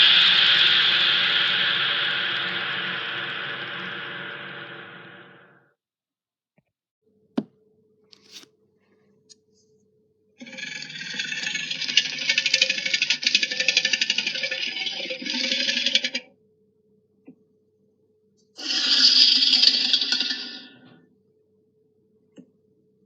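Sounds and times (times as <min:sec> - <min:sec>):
rapid rattle: 0:10.4 - 0:16.2.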